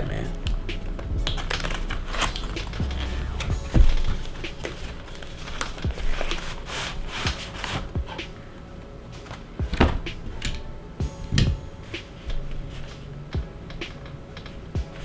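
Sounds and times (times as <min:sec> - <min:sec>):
packaging rustling: 0:00.1 - 0:15.0
heavy thump: 0:09.6 - 0:12.6.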